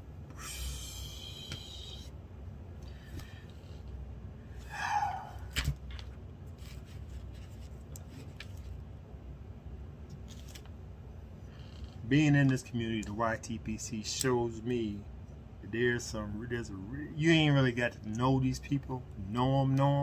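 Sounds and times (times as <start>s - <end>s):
breathy exhale: 0.3s - 2.1s, 4.6s - 5.6s
handling noises rubbing: 5.5s - 8.9s.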